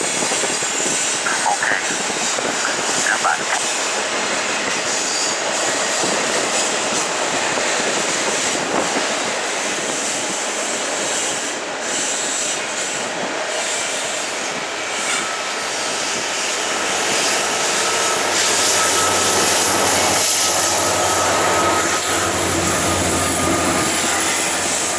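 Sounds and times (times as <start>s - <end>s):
freight train rolling past: 0.0s - 24.9s
high wheel squeal: 11.2s - 24.9s.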